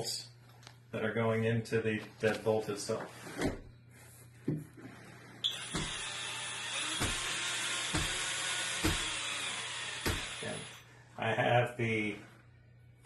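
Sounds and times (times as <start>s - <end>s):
cordless drill running: 5.4s - 10.9s.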